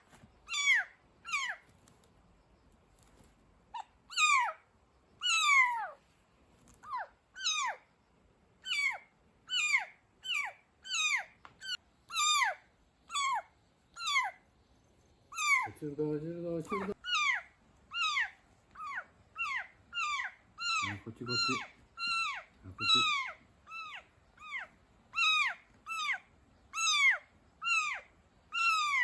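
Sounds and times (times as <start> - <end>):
kitten meowing: 0.5 - 1.6, 3.8 - 4.6, 5.2 - 6.0, 6.8 - 7.8, 8.6 - 13.4, 14.0 - 14.4, 15.3 - 15.8, 16.6 - 29.0.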